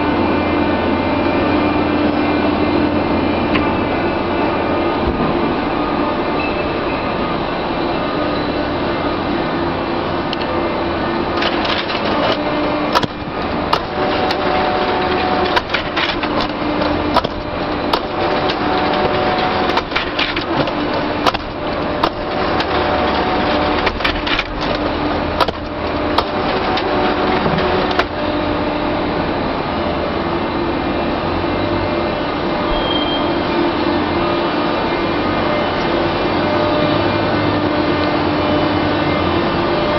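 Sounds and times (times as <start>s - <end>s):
baler machine running: 0.0s - 39.9s.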